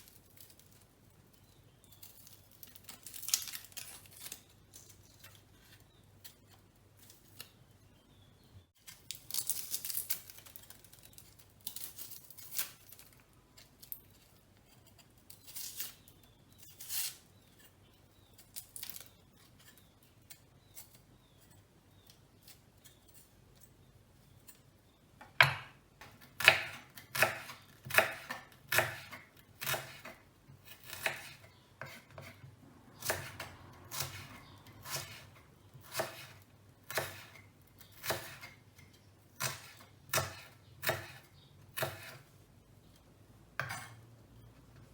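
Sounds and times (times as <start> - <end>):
onion skin crackling and tearing: 0.0 - 6.4, 8.8 - 17.4, 18.2 - 20.5
knife slicing onion: 25.4 - 42.3.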